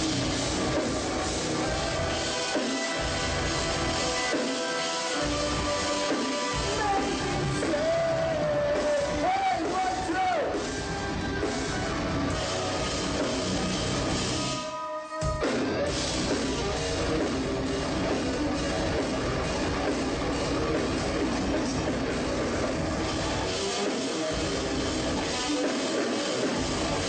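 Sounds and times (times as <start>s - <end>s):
metal band playing: 0.0s - 27.0s.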